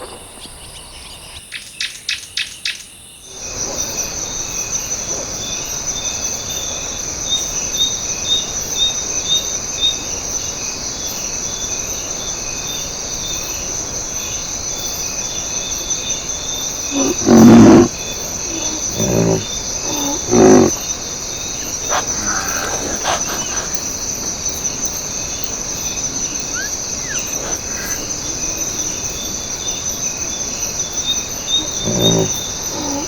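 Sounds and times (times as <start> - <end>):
crickets trilling: 3.3 - 33.0
large animal low call: 16.8 - 24.4, 26.4 - 29.0, 31.5 - 33.0
chirp: 16.8 - 33.0.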